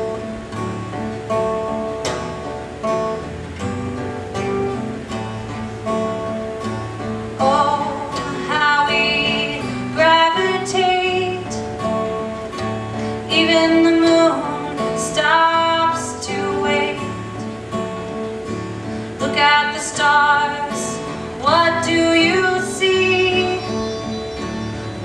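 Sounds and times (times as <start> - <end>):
strummed acoustic guitar: 0.0 - 25.0
person singing: 13.2 - 17.2, 19.2 - 24.0.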